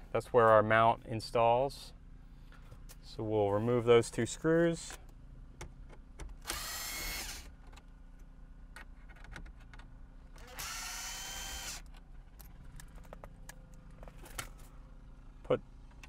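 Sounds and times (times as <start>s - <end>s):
power driver whirring: 6.4s - 7.6s, 10.3s - 11.9s.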